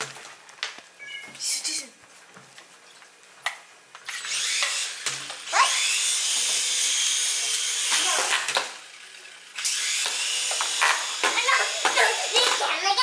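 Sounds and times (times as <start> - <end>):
toy helicopter motors whining: 4.0 - 13.0.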